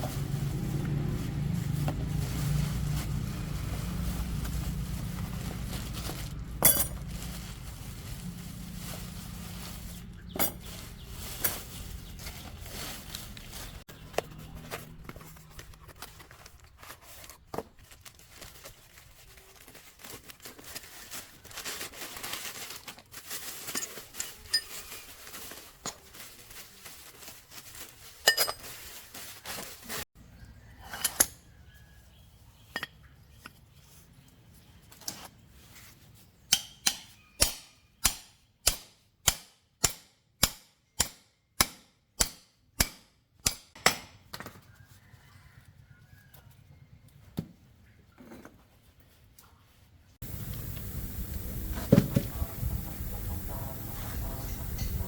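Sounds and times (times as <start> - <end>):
metal tools clinking: 6.5 - 7.4, 10.3 - 11.8, 23.6 - 25.2, 28.2 - 28.9.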